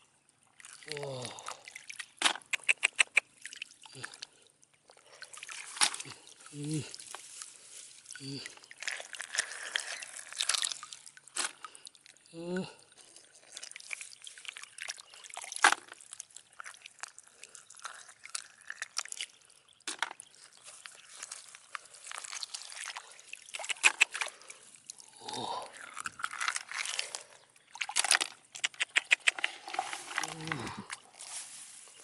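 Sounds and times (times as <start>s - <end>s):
wet crunching and sloshing: 0.4s - 12.2s, 13.0s - 32.0s
sharp clicks and crackles: 28.0s - 29.6s.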